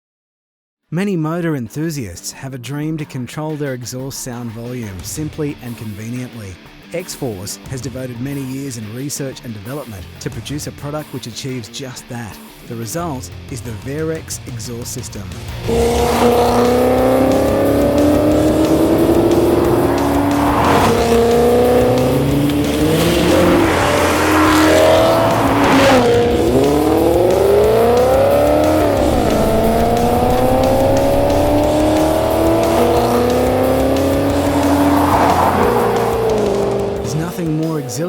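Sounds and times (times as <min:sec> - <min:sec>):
engine revving through gear changes: 0:14.8 - 0:37.5.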